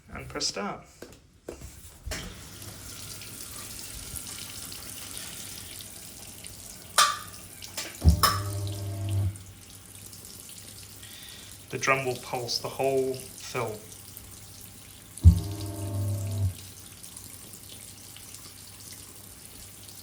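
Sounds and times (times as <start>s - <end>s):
washing machine filling with water: 2.0s - 20.0s
motor humming: 8.0s - 9.4s, 15.2s - 16.6s.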